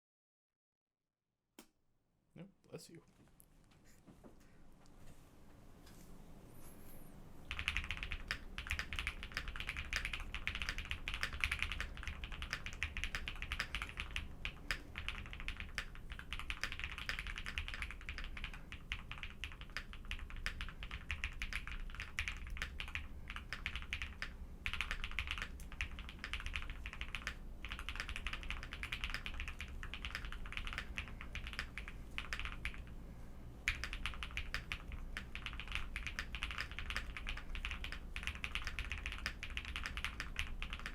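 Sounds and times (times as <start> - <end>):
mechanical keyboard typing: 7.5 - 32.9, 33.6 - 40.9.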